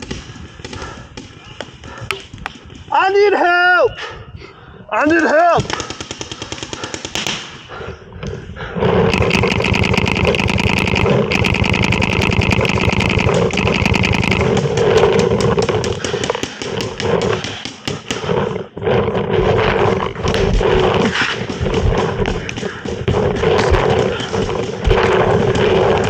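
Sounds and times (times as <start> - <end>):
heavy panting breaths: 0.0 - 2.4, 3.9 - 4.9, 5.6 - 26.0
paintball marker shots: 9.1 - 18.4, 21.0 - 26.0.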